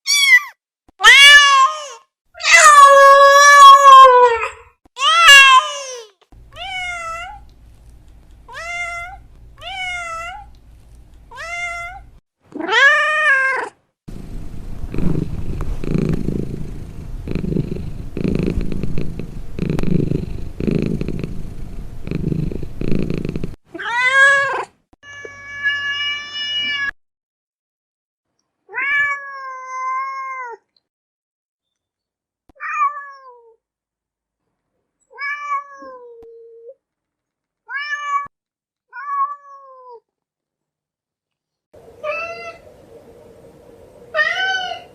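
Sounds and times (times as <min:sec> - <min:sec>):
cat meowing: 0:00.0 - 0:05.9, 0:06.5 - 0:07.5, 0:08.5 - 0:10.5, 0:11.3 - 0:13.8, 0:44.1 - 0:44.9
cat purring: 0:14.1 - 0:23.6.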